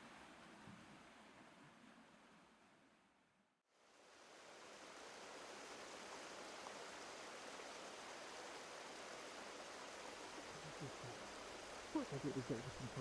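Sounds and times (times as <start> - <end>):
river water rushing: 4.0 - 13.0.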